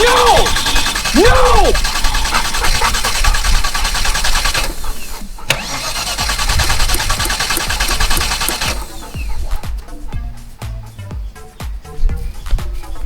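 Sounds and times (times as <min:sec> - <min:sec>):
car engine cranking: 0:00.0 - 0:09.3
starter click: 0:05.5 - 0:09.1.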